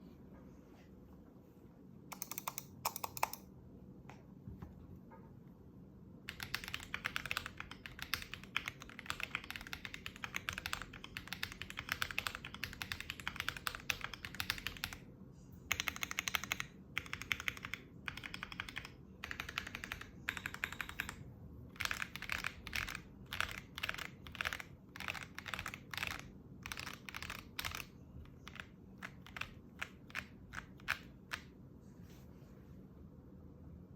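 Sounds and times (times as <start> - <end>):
mechanical keyboard typing: 2.1 - 3.5, 6.3 - 15.0, 15.7 - 31.5.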